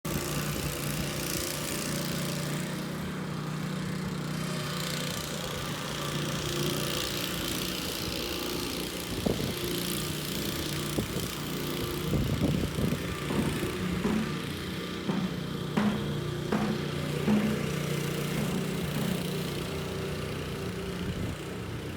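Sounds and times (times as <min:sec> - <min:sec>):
engine running: 0:00.1 - 0:21.9
knocks and clicks: 0:13.3 - 0:19.4.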